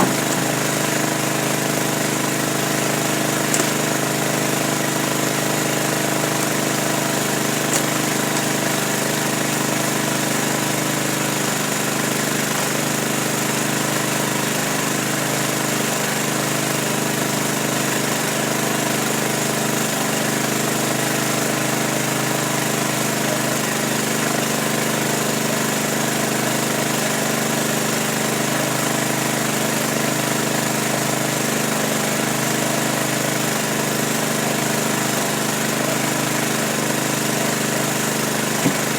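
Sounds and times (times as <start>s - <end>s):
click: 3.5s - 3.8s.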